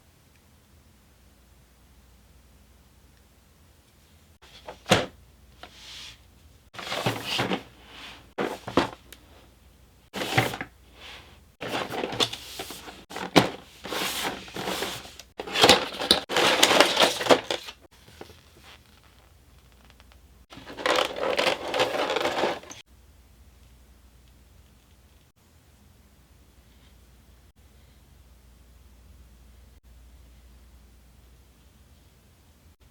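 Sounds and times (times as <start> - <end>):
packaging rustling and scraping: 6.8 - 9.1, 10.2 - 22.8.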